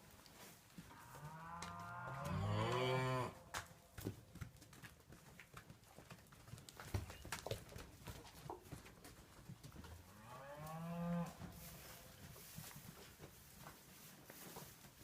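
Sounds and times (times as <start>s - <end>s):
cow mooing: 1.0s - 3.4s.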